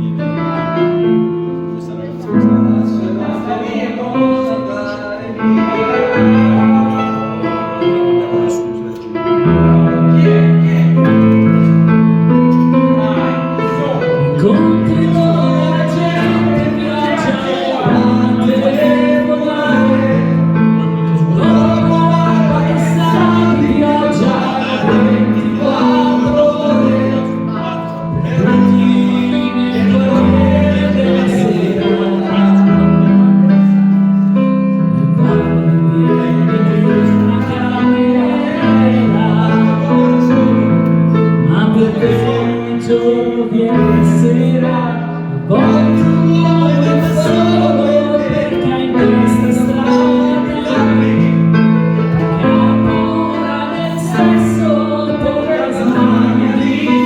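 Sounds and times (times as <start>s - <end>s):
piano chords: 0.0s - 57.0s
person singing pop ballad: 12.8s - 34.2s, 34.9s - 57.0s.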